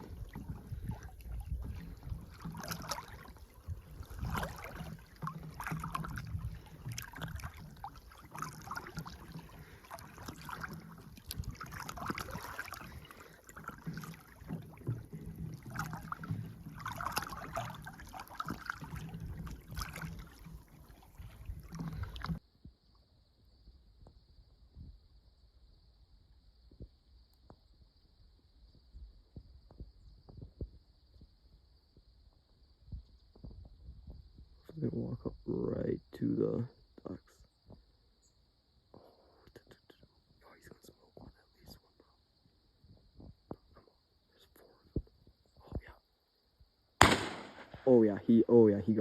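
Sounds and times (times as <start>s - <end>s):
water splashing: 0.0s - 22.4s, 47.0s - 48.9s.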